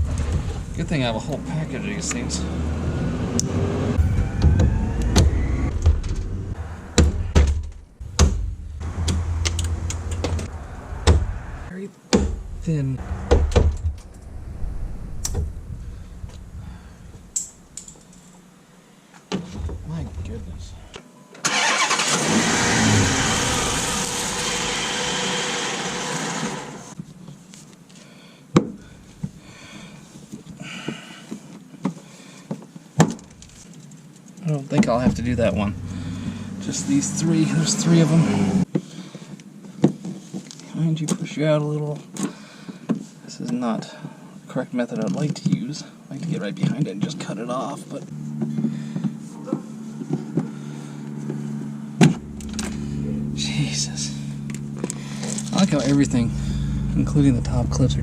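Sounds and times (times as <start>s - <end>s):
vehicle engine running loudly: 2.1s - 6.9s, 35.0s - 38.6s, 48.1s - 58.0s.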